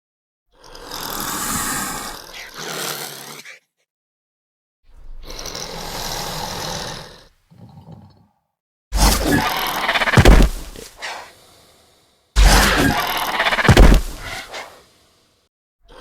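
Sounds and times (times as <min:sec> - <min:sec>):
raspy hissing creature roar: 0:00.6 - 0:03.7, 0:05.2 - 0:07.3, 0:09.0 - 0:16.0.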